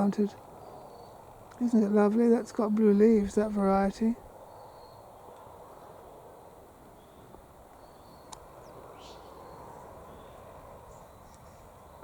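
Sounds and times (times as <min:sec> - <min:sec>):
distant bird calls: 0:00.0 - 0:12.0
steady low outdoor noise: 0:00.0 - 0:12.0
small sharp clicks: 0:07.7 - 0:08.5.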